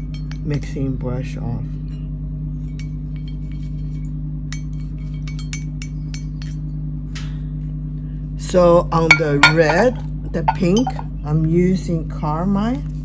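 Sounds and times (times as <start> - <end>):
steady low hum: 0.0 - 13.0
brush clinking in water jar: 9.1 - 11.1.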